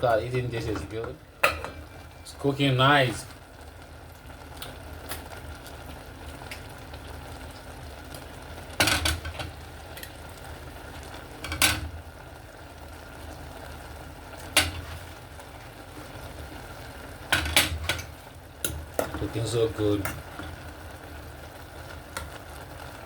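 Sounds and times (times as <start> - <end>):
soup simmering in a pot: 0.0 - 23.0.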